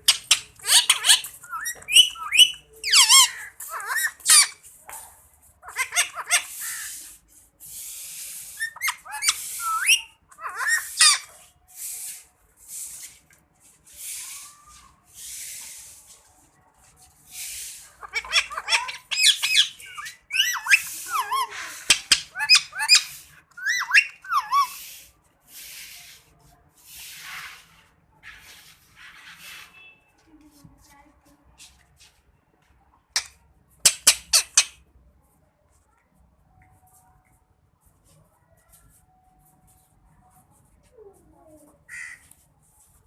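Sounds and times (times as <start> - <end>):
parrot squawking and whistling: 0.1 - 4.6, 5.6 - 7.1, 8.4 - 11.4, 18.0 - 25.0.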